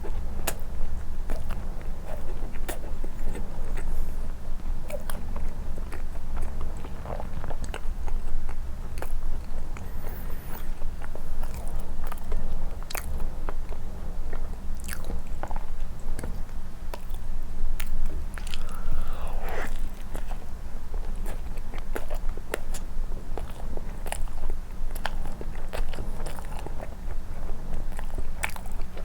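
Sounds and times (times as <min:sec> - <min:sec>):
chewing and biting bread: 0:00.0 - 0:29.0
steady low rumble: 0:17.7 - 0:21.1.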